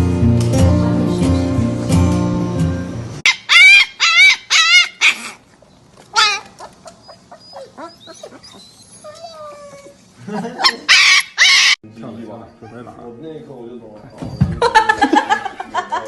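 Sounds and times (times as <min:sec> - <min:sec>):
dog whining: 0:03.3 - 0:05.5, 0:06.1 - 0:11.8, 0:12.5 - 0:13.1, 0:14.1 - 0:14.7.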